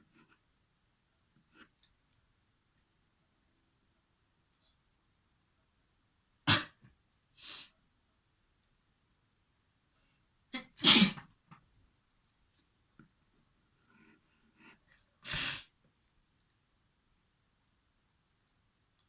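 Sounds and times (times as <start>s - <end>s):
person sneezing: 10.6s - 11.2s, 15.2s - 15.7s.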